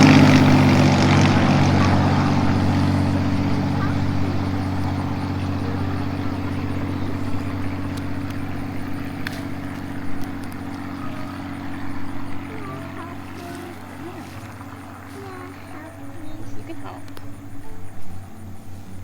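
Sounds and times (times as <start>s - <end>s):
engine droning: 0.0s - 19.0s
light clicks: 7.3s - 11.8s.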